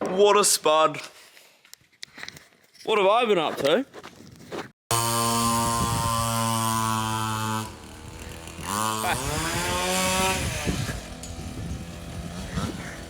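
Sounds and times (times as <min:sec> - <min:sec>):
race car engine revving: 0:06.1 - 0:11.3.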